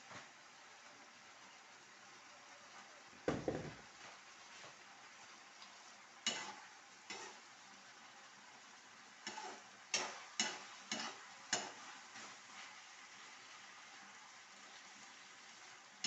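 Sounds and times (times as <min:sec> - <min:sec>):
faint sizzle: 0:00.0 - 0:16.0
spoon scraping a pan: 0:06.2 - 0:07.5, 0:09.2 - 0:12.8.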